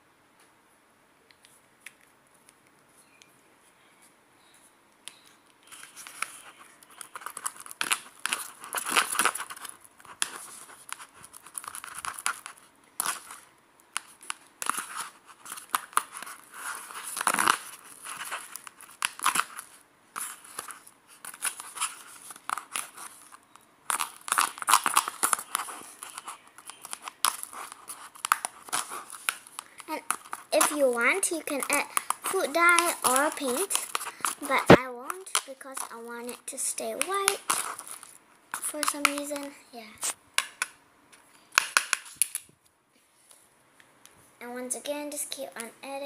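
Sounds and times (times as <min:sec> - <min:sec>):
slime crackling and snapping: 0:05.7 - 0:23.3, 0:23.9 - 0:36.0, 0:36.8 - 0:40.8, 0:41.5 - 0:42.5.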